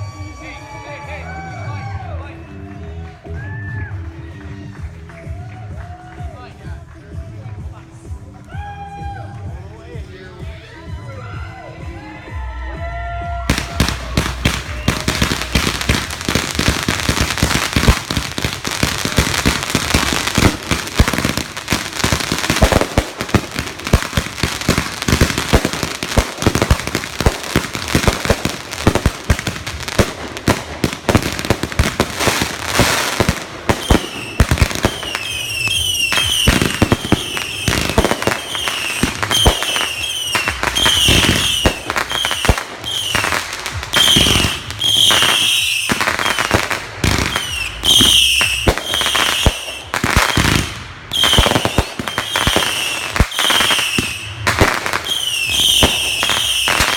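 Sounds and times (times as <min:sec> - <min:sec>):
fireworks crackling bangs: 0:13.5 - 0:56.9
falling firework whistles: 0:32.0 - 0:43.3, 0:47.2 - 0:56.9.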